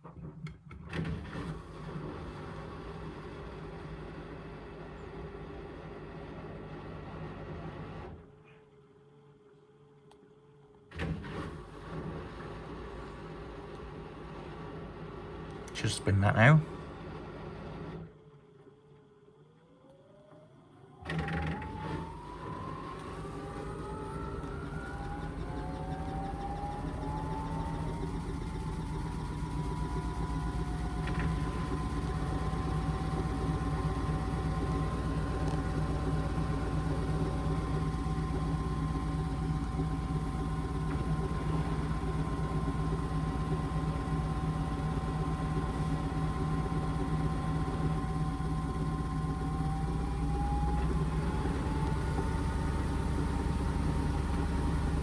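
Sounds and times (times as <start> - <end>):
washing machine motor whining: 10.9 - 55.0
low hum: 21.6 - 55.0.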